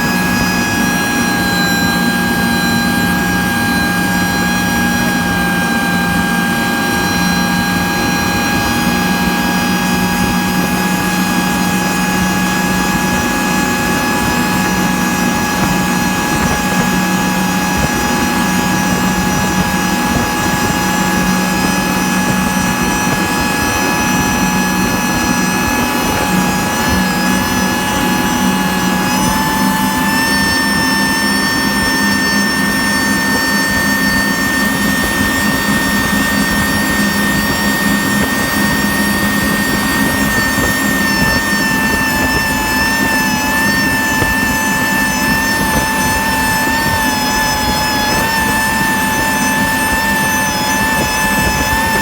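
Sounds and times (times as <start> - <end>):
high-pitched whine: 0.0 - 52.0
outboard motor running: 0.0 - 52.0.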